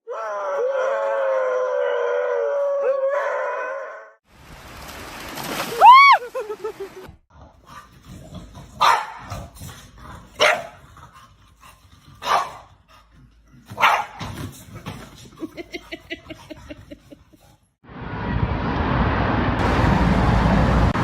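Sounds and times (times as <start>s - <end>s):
dog barking: 8.8s - 9.3s, 10.4s - 10.8s, 12.2s - 12.7s, 13.7s - 14.3s
dog yipping: 13.8s - 14.2s.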